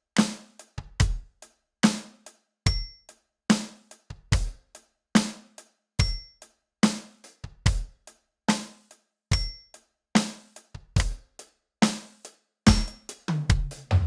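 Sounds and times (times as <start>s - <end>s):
electronic drum kit groove: 0.2s - 1.3s, 12.7s - 14.0s.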